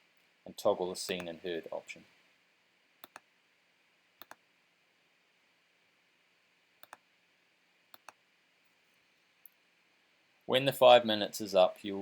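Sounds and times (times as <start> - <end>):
computer mouse button clicks: 3.0 - 3.2, 4.2 - 4.4.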